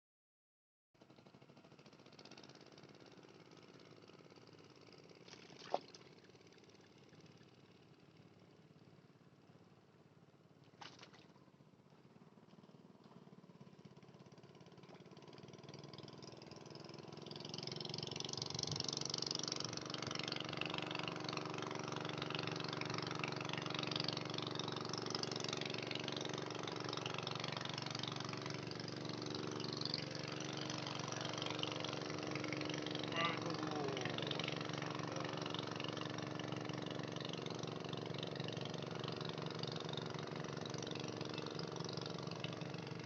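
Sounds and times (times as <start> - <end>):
boat engine running: 1.0 - 43.0.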